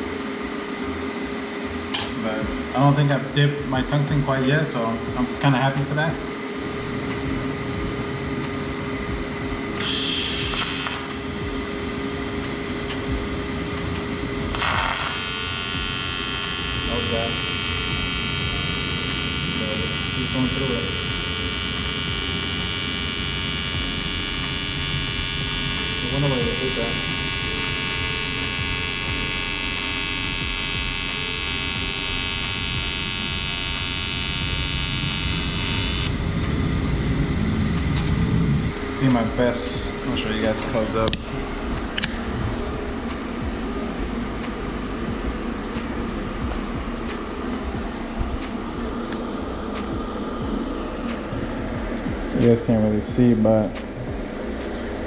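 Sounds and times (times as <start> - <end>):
low steady rumble: 0.0 - 9.9, 11.2 - 55.0
welder fan hum: 0.0 - 55.0
welding arc buzzing: 1.9 - 2.3, 9.7 - 39.2.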